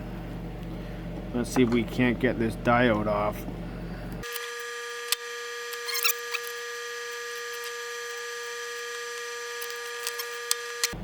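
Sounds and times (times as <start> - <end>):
high-pitched electrical whine: 4.2 - 11.0
short squeak: 5.7 - 6.6.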